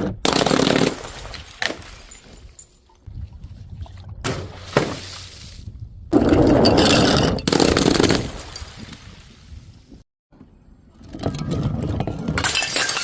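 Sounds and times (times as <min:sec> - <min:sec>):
glass shattering: 0:12.4 - 0:13.0.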